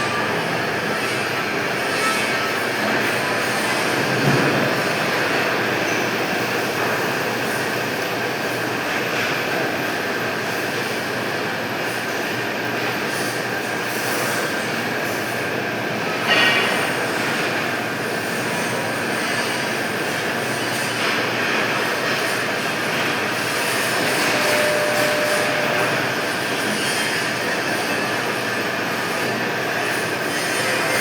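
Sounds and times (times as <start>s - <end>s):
sharp metallic squeal: 0.0s - 3.8s, 20.6s - 31.0s
metalworking machinery running: 0.0s - 31.0s
faint high whine: 23.9s - 27.3s.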